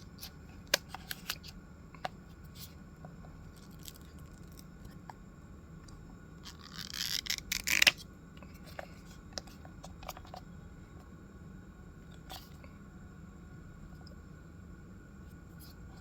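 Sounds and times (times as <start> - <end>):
packaging rustling and ripping: 6.4 - 8.0.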